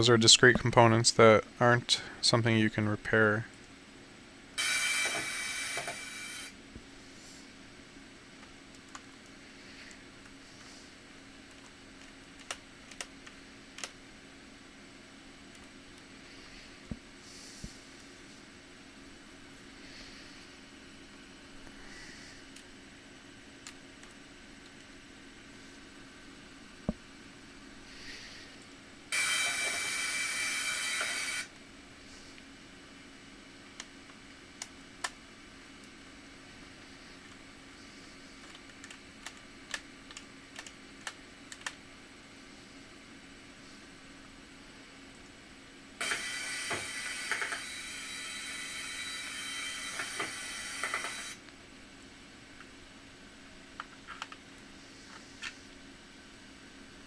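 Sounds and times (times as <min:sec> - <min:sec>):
steady hiss: 0:04.6 - 0:08.0, 0:15.8 - 0:40.4, 0:41.9 - 0:53.7.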